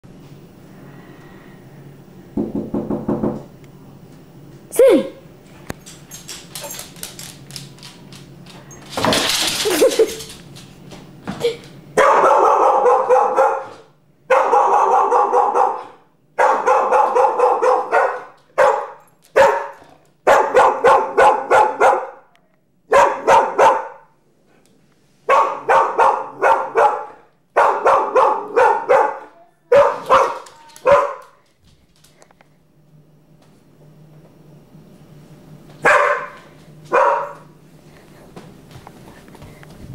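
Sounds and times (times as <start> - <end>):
dog barking: 12.0 - 22.3, 22.9 - 24.1, 25.3 - 31.4, 35.8 - 37.5.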